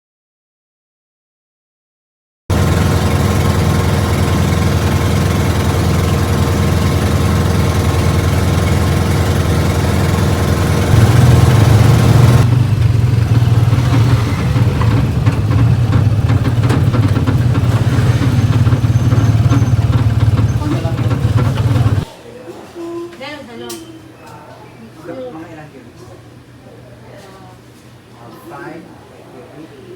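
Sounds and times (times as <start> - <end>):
engine running with low hum: 2.5 - 22.1.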